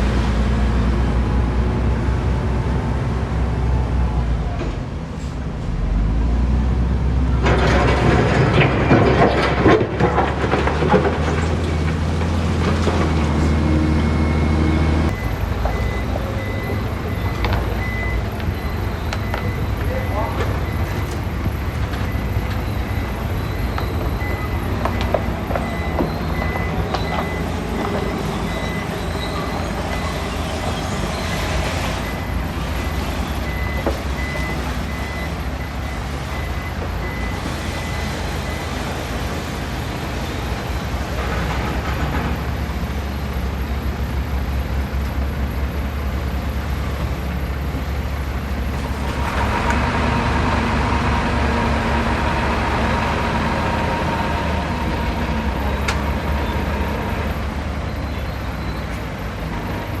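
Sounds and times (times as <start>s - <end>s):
diesel machinery rumbling: 0.0s - 60.0s
reversing alarm beeping: 13.4s - 39.2s.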